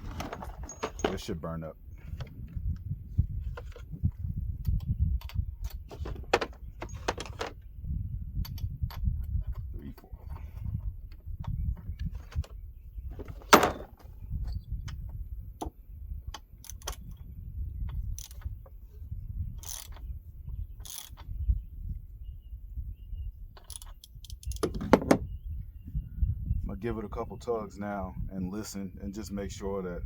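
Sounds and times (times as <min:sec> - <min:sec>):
metal tools clinking and knocking: 0:00.1 - 0:01.3, 0:04.7 - 0:07.6, 0:12.1 - 0:14.1.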